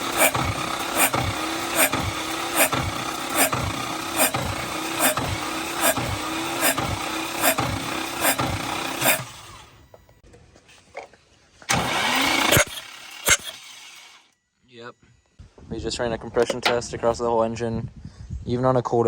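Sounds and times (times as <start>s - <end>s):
starter motor cranking engine: 0.0s - 10.0s, 11.7s - 14.3s.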